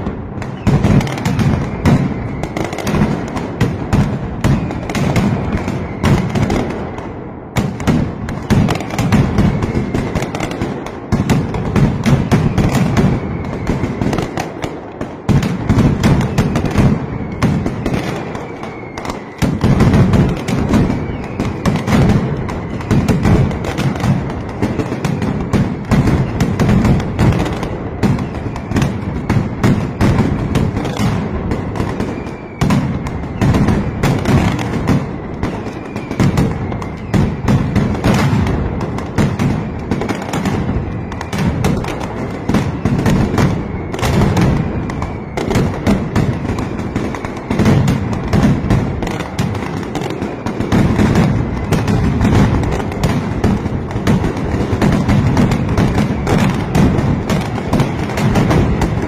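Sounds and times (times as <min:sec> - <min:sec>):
firecracker barrage: 0:00.0 - 0:59.0.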